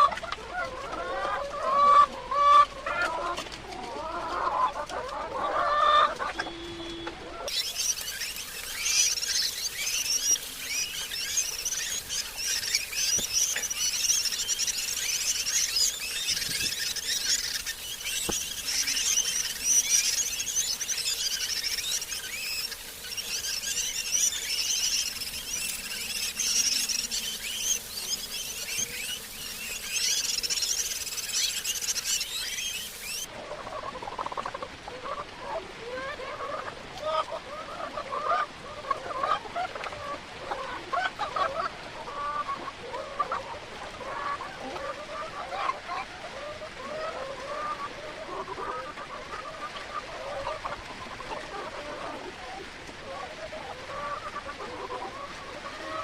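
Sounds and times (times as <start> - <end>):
hens clucking: 0.0 - 52.3, 53.5 - 56.0
birds chirping: 6.1 - 33.3.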